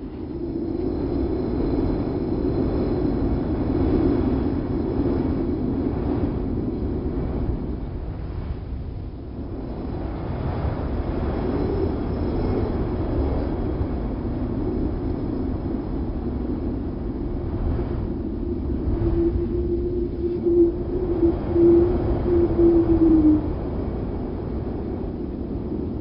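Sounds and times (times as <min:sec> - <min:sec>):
wind howling: 0:00.0 - 0:26.0.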